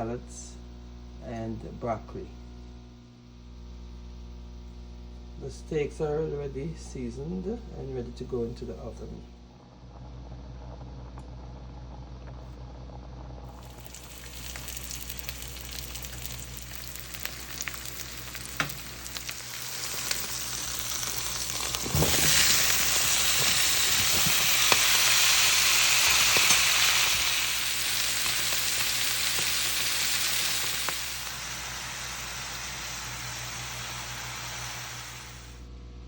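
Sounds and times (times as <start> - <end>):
food sizzling in a hot pan: 13.5 - 35.6.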